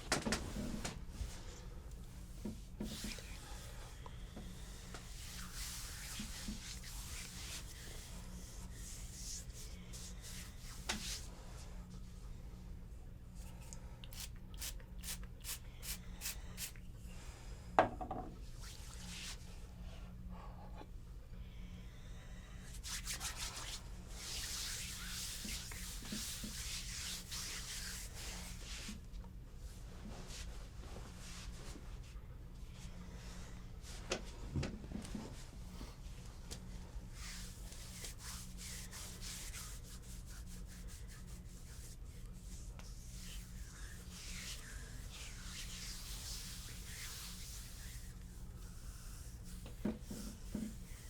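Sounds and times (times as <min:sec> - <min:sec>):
hands rubbing on skin: 0:02.3 - 0:03.7, 0:04.6 - 0:11.3, 0:13.5 - 0:16.8, 0:22.8 - 0:29.0, 0:37.2 - 0:51.0.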